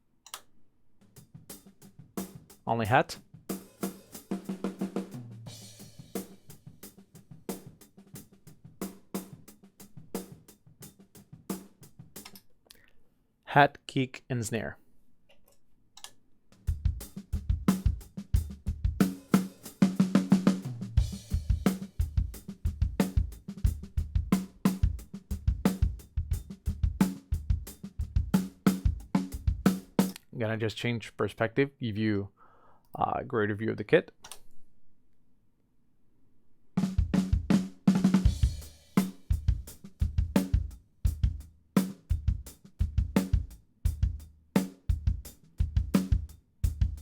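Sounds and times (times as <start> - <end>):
snare drum: 3.5 - 6.6, 16.7 - 30.1, 36.8 - 47.0
kick drum: 16.7 - 19.0, 39.4 - 41.4, 44.9 - 47.0.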